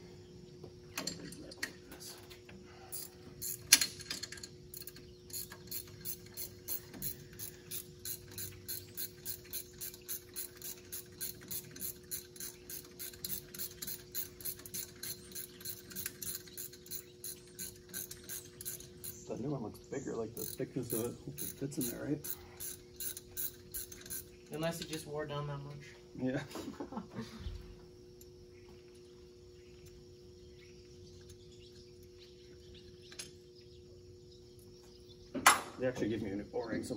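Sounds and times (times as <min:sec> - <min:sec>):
faint steady hum: 0:00.0 - 0:36.9
ratchet wrench clicking: 0:02.9 - 0:19.2, 0:20.4 - 0:24.3.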